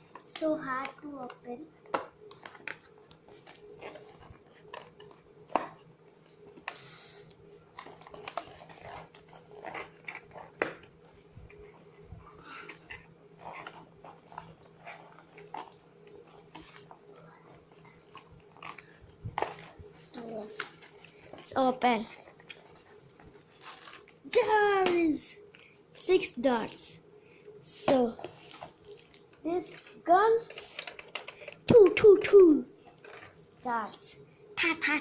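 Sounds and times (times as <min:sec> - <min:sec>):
plastic packaging crinkling: 0:07.7 - 0:11.6, 0:17.8 - 0:24.2.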